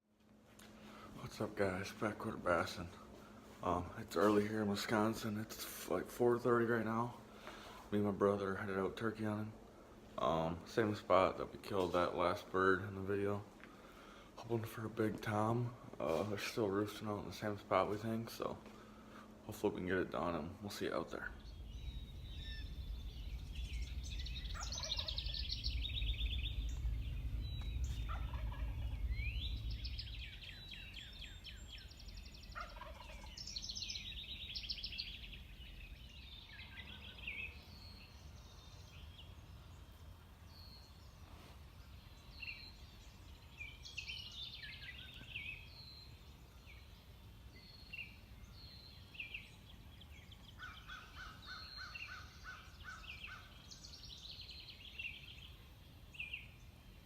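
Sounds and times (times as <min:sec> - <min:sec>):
songbirds chirping: 0:00.0 - 0:57.0
low rumble: 0:18.6 - 0:40.5
turkey gobbling: 0:24.5 - 0:25.5, 0:27.9 - 0:29.0, 0:32.3 - 0:33.6.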